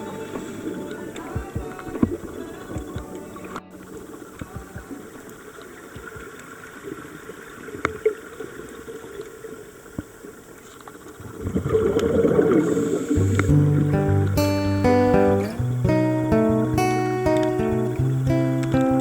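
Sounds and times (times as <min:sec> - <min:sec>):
muffled underwater hiss: 0:00.0 - 0:14.5.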